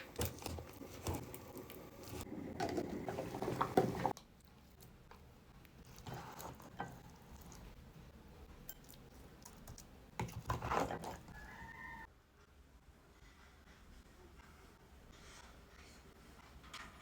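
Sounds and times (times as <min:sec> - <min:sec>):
kitchen utensils clattering: 0:02.2 - 0:04.1.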